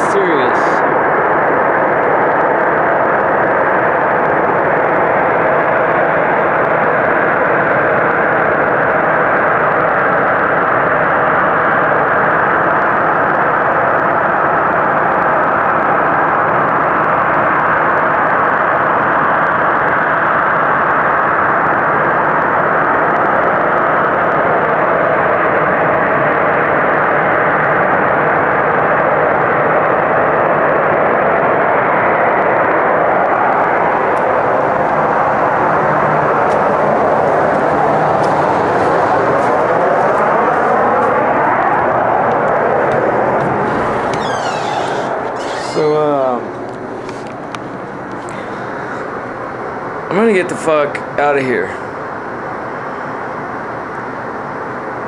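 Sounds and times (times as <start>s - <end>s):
loud droning roar: 0.0s - 50.2s.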